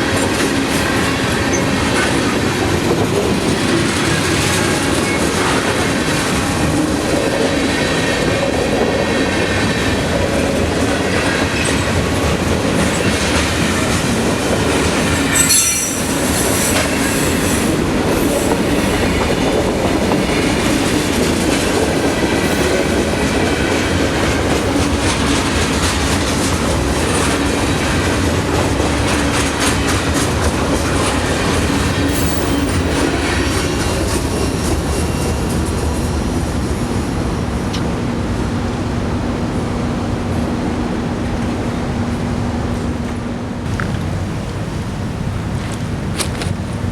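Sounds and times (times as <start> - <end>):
train wheels rumbling on rail: 0.0 - 46.9
wheel squeal: 15.1 - 17.5, 32.1 - 33.2.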